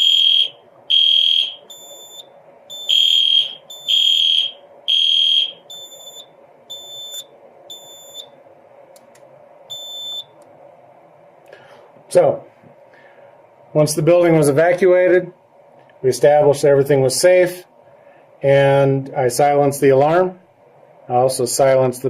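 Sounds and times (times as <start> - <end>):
fire alarm horns pulsing: 0.0 - 8.3, 9.7 - 10.4.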